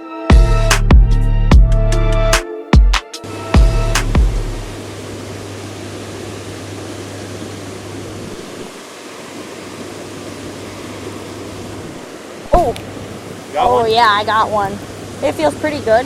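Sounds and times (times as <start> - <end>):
river water rushing: 3.2 - 16.0.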